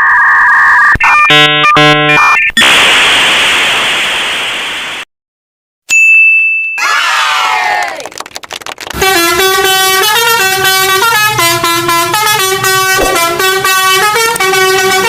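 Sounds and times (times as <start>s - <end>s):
multi-tone horn playing tune: 9.0s - 15.0s.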